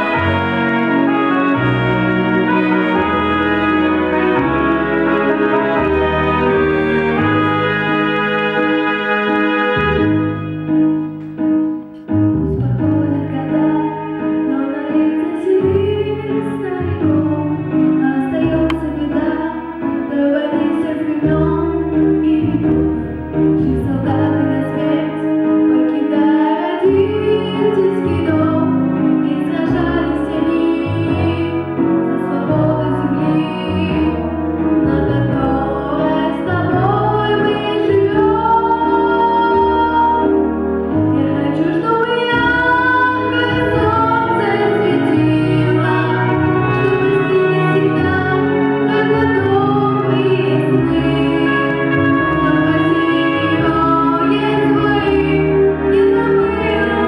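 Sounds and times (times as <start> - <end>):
piano-led backing track: 0.0 - 57.0
woman singing: 12.5 - 57.0.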